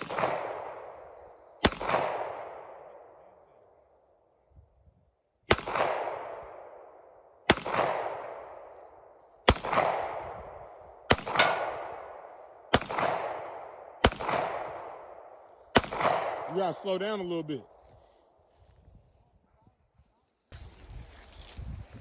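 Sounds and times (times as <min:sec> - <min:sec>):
gunshots with echo: 0:00.0 - 0:03.4, 0:05.5 - 0:17.5.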